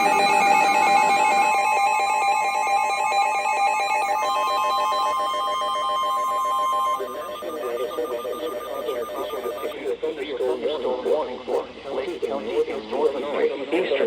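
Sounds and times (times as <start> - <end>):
higher steady tone: 0.0 - 9.8
steady high alert tone: 0.0 - 9.8
warbling electronic tones: 0.0 - 9.8.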